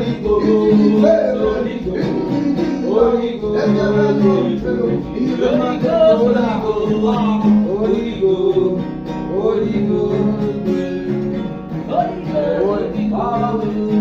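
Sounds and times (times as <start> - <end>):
person singing: 0.0 - 11.1, 11.8 - 14.0
gospel melody line: 0.0 - 14.0
held accompaniment: 0.0 - 14.0.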